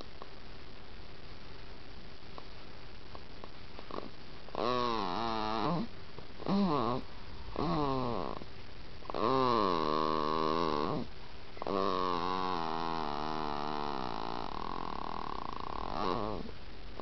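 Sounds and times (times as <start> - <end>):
person snoring: 3.9 - 8.4, 9.1 - 16.5.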